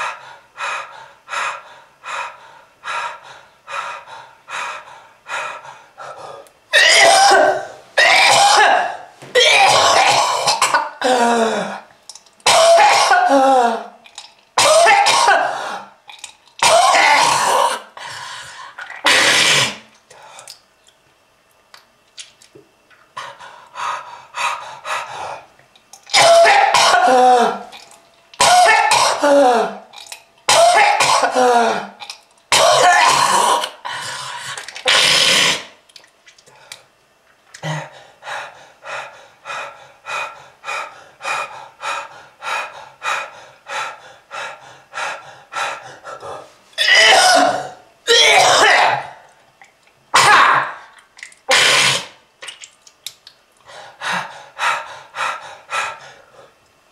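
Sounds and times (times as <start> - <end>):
person coughing hard: 6.7 - 11.9, 12.5 - 13.9, 14.6 - 15.8, 16.6 - 17.9, 19.0 - 19.8, 26.1 - 27.7, 28.4 - 29.9, 30.5 - 33.8, 46.8 - 49.2, 50.2 - 50.8, 51.5 - 52.1.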